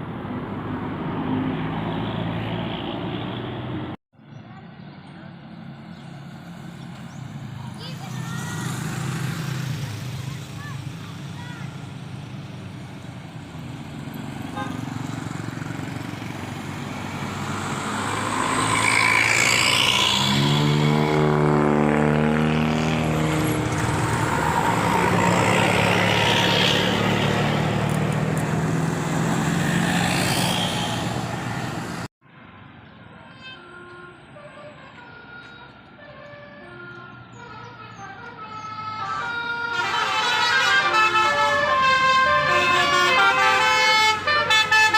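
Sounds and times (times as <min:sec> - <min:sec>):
bus engine and road noise: 0:00.0 - 0:44.9
multi-note bus horn: 0:14.5 - 0:15.0, 0:33.3 - 0:44.9.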